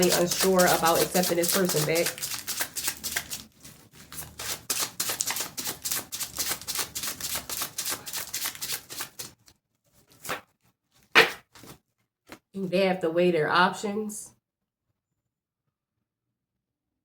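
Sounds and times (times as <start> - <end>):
cards being shuffled: 0.0 - 12.4.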